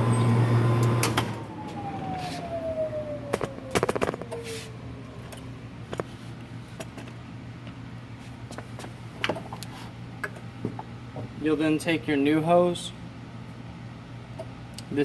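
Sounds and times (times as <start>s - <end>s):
pump motor whine winding down: 0.0s - 5.3s.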